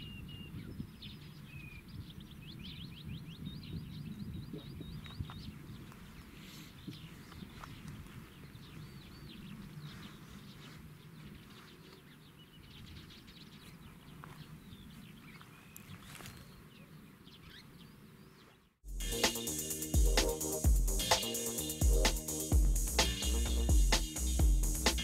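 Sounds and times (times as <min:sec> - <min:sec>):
small birds chirping and singing: 0:00.0 - 0:25.0.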